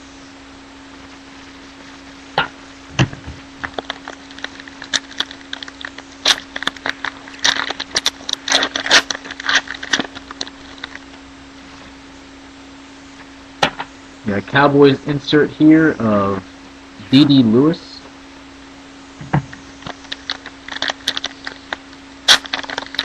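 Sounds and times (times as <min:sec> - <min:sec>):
trading cards clicking and rustling: 0:03.0 - 0:11.1, 0:19.2 - 0:23.0.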